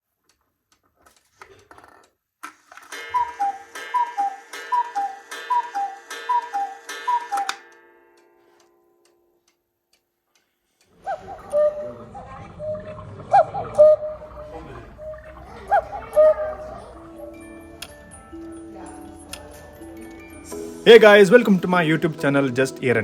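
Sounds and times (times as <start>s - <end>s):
cuckoo clock calls: 2.8s - 8.3s, 10.8s - 22.7s
clock gong ringing: 2.9s - 8.6s, 13.8s - 21.7s.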